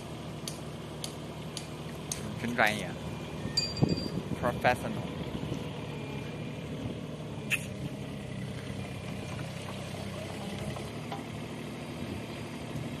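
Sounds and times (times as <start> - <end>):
excavator engine idling: 0.0 - 13.0.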